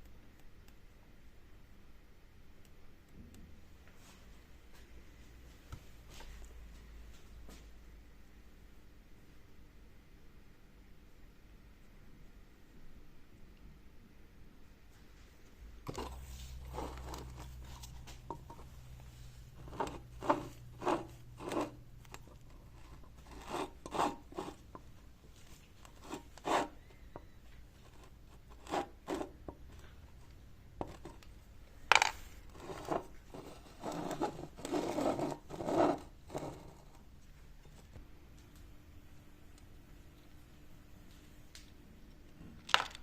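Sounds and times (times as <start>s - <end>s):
rubbing and scraping on bicycle hub: 15.9s - 24.9s, 25.8s - 27.0s, 27.8s - 29.6s.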